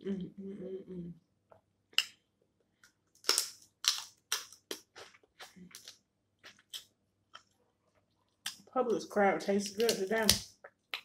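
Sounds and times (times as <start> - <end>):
crab shells cracking: 3.1 - 5.0, 9.4 - 11.0.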